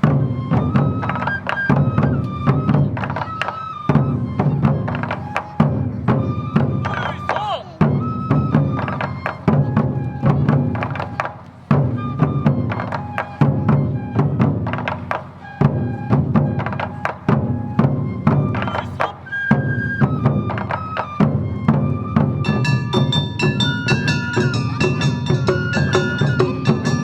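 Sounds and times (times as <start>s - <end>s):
drums: 0.0s - 27.0s
flute melody: 0.0s - 27.0s
shamisen: 0.0s - 27.0s
hand gong struck: 22.5s - 27.0s.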